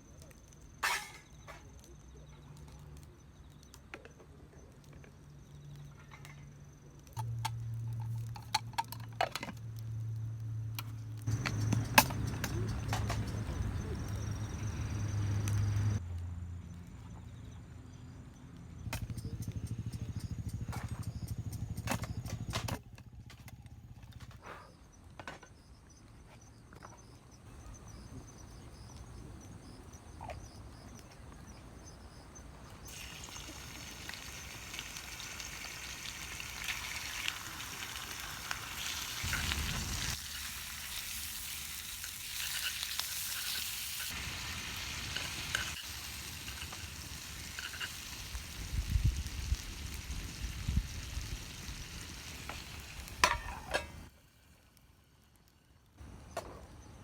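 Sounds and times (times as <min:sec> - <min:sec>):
campfire crackles: 0:00.0 - 0:21.4, 0:27.5 - 0:57.0
food sizzling in skillet: 0:32.9 - 0:54.7.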